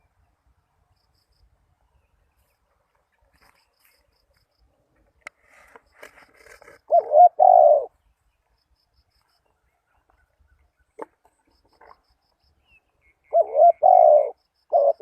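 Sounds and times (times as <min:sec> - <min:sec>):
dove cooing: 0:06.5 - 0:07.9, 0:13.2 - 0:15.0.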